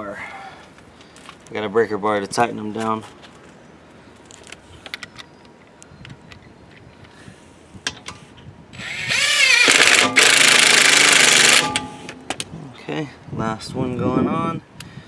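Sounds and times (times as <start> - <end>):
impact wrench whining and hammering: 8.8 - 12.4.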